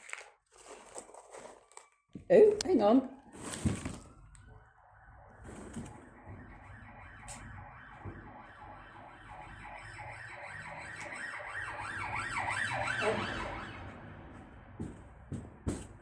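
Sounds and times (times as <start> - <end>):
ambulance siren yelping: 3.1 - 14.8.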